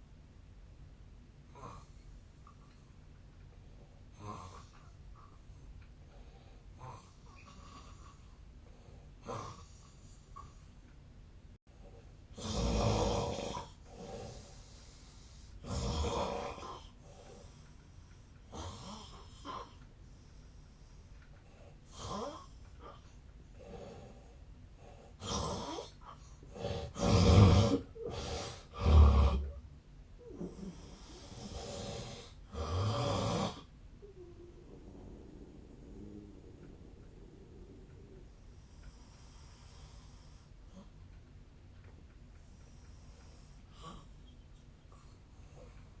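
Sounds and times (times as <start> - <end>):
man snoring: 4.2 - 4.8, 9.2 - 9.8, 12.4 - 14.6, 15.6 - 16.9, 18.5 - 19.8, 21.9 - 22.5, 25.1 - 25.9, 26.5 - 29.6, 30.4 - 33.7.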